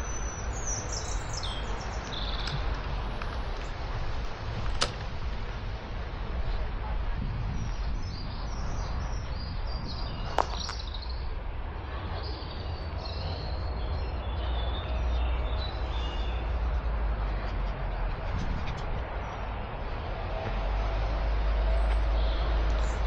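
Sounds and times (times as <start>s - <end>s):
birds chirping and trilling: 0.0s - 5.4s, 7.4s - 19.7s
steady low rumble: 0.0s - 23.0s.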